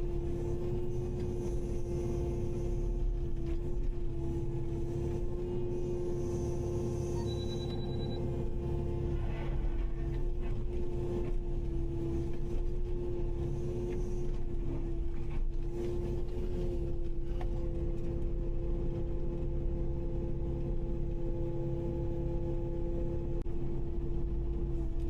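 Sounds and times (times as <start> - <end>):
excavator diesel engine running: 0.0 - 25.0.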